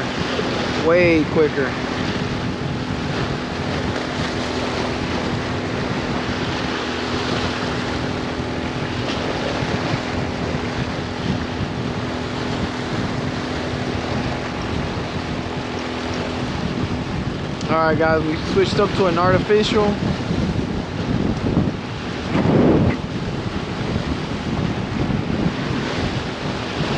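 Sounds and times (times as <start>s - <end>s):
moving water: 0.0s - 26.9s
wind on microphone: 0.0s - 26.9s.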